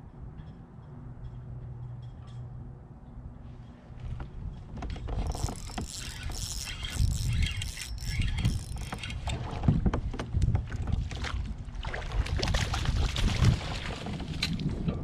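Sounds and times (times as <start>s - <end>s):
knocks and clicks of handling: 4.1s - 10.7s
wind buffeting microphone: 4.1s - 15.0s.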